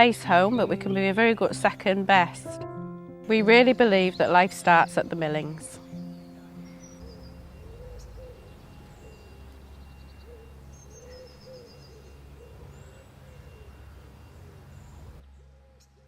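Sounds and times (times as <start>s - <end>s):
small birds chirping: 3.4s - 15.2s
bird cooing: 5.8s - 15.0s
low rumble: 6.0s - 11.4s.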